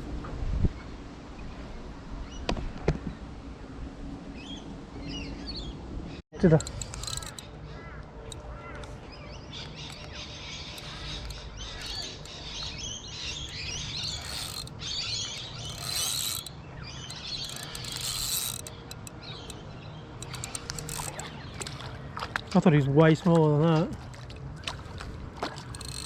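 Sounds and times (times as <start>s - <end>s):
birds chirping: 4.4s - 23.4s
fishing reel ratcheting: 6.4s - 7.5s, 10.7s - 19.6s, 20.2s - 21.3s, 25.6s - 26.0s.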